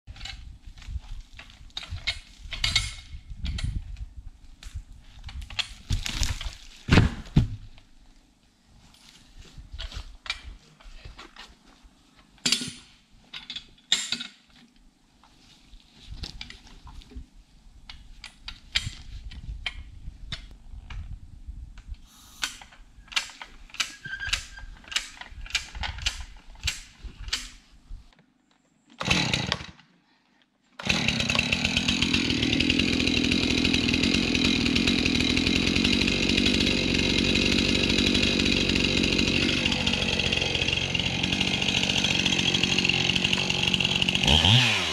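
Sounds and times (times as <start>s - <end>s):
chainsaw running: 29.0s - 29.7s, 30.8s - 44.9s.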